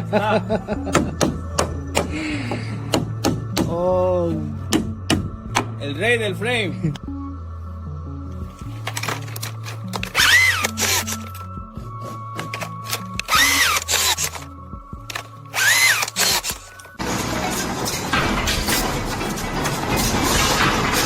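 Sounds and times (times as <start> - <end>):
background music: 0.0 - 21.0
power tool whining: 10.0 - 11.4, 13.2 - 14.5, 15.1 - 21.0
harsh machine noise: 15.5 - 21.0.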